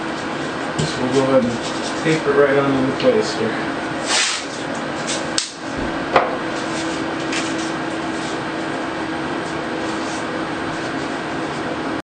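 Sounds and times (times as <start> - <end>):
low hum: 5.0 - 11.6.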